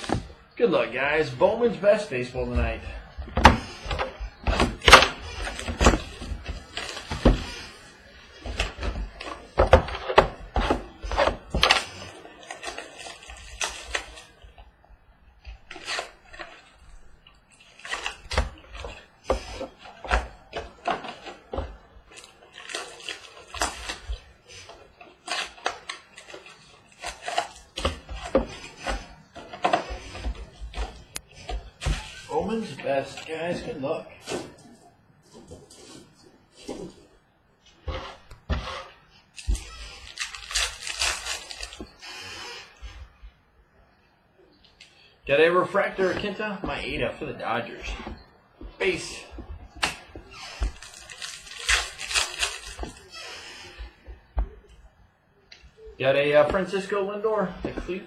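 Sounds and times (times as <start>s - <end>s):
cardboard crackling and tearing: 1.4s - 14.8s, 15.5s - 33.6s, 37.8s - 43.2s, 48.8s - 54.6s.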